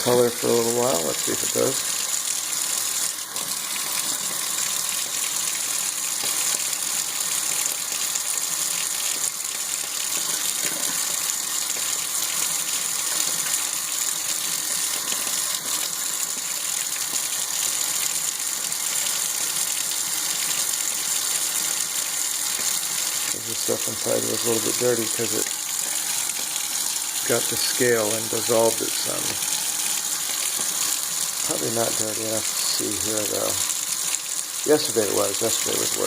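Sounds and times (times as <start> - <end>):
water gushing into a sink: 0.0 - 36.0.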